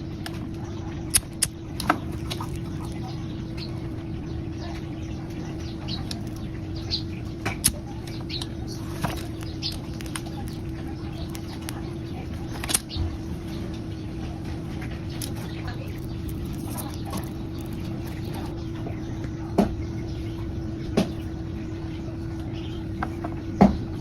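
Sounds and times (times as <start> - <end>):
steady background hum: 0.0 - 24.0
sharp clicks: 1.1 - 3.7, 7.4 - 13.0.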